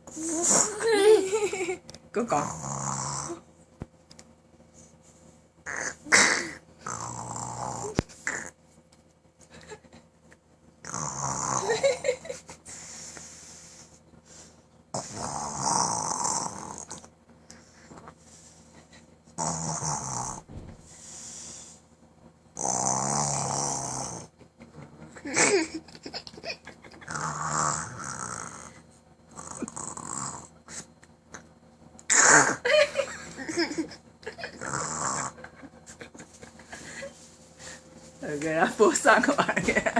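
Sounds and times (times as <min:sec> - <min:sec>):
person snoring heavily: 0:02.4 - 0:03.4, 0:05.7 - 0:08.5, 0:10.8 - 0:11.8, 0:14.9 - 0:17.0, 0:19.4 - 0:21.7, 0:22.6 - 0:24.3, 0:27.1 - 0:30.9, 0:32.1 - 0:32.6, 0:34.5 - 0:35.4.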